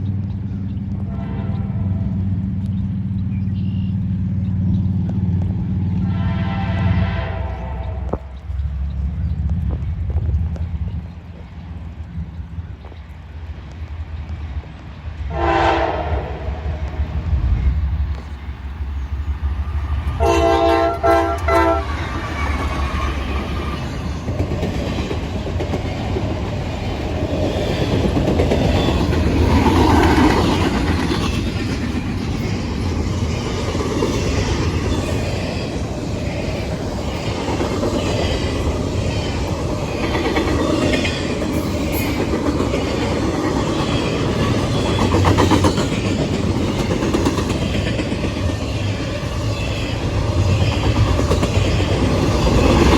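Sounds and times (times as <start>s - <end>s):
train rumbling past: 0.0s - 52.9s
train horn blasts: 1.0s - 2.3s, 6.0s - 8.4s, 15.3s - 17.0s, 20.2s - 22.2s
wheels clacking over rail joints: 17.8s - 52.9s.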